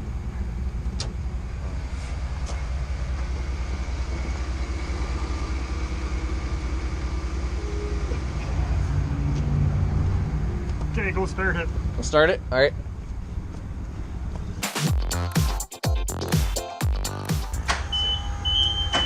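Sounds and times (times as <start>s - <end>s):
engine idling: 0.0s - 9.4s.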